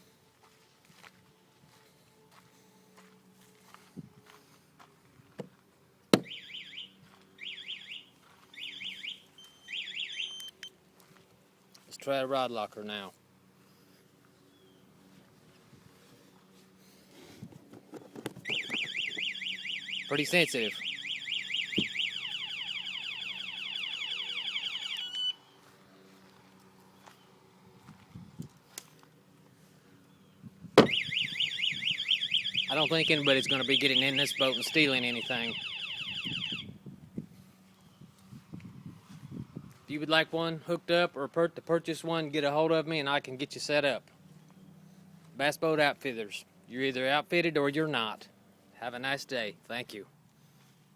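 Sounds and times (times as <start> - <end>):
alarm warbling chirps: 6.2 - 8.0, 18.5 - 25.4, 30.8 - 36.6.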